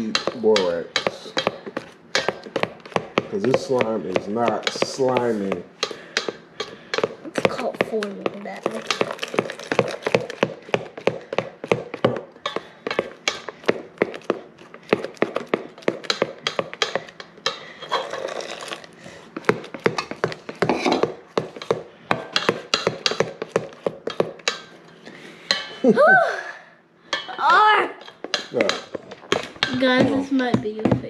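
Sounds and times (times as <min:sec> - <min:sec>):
utensil tapping a bowl: 0:00.0 - 0:17.7, 0:19.5 - 0:24.8, 0:28.0 - 0:31.0
utensil stirring thick slime: 0:00.0 - 0:24.8.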